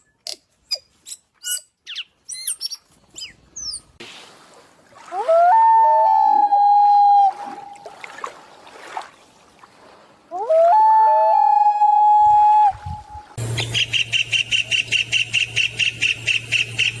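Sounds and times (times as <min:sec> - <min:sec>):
bird chirping: 0:00.7 - 0:03.9, 0:13.4 - 0:17.0
low steady hum: 0:12.2 - 0:17.0
bird whistling: 0:13.6 - 0:17.0.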